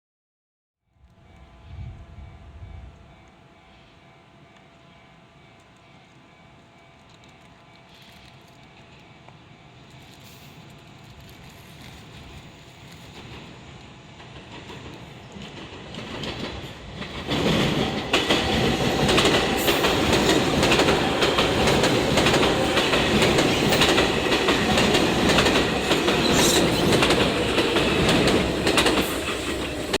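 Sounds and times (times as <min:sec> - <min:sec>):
express train passing: 0:00.9 - 0:30.0
wheels clicking over rail joints: 0:07.0 - 0:30.0.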